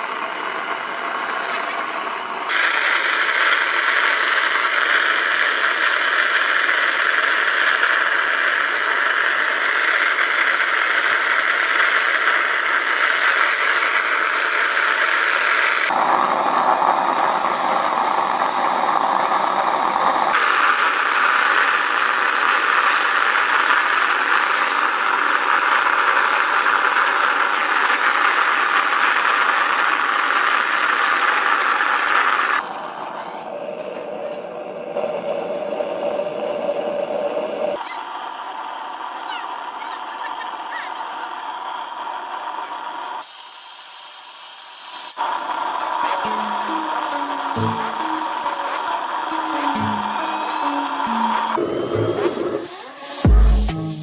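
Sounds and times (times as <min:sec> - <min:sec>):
furnace air rushing: 0:00.0 - 0:38.4.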